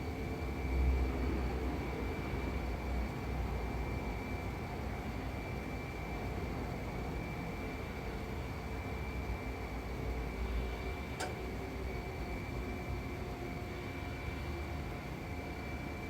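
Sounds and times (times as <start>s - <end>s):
sharp click: 11.2s - 11.4s.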